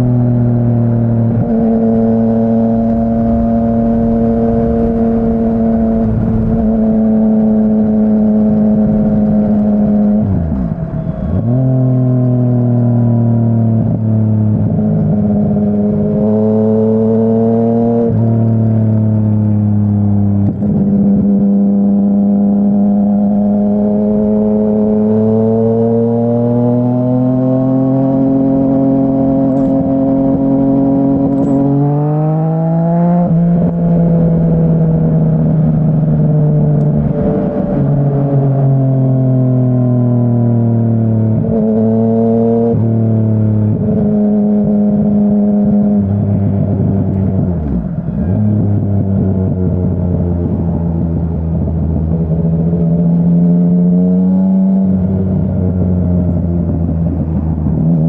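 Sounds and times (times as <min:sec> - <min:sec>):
motorcycle engine running: 0:00.0 - 0:16.9, 0:39.9 - 0:58.0.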